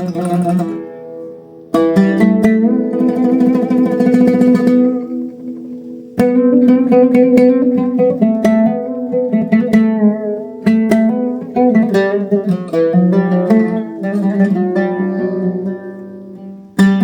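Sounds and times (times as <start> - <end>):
oud melody plucked: 0.0 - 17.0.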